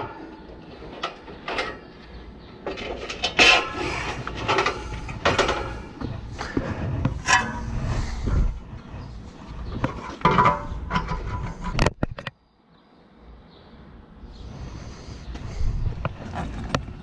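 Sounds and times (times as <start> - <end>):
metal clinks knocks and scrapes: 2.6 - 12.3.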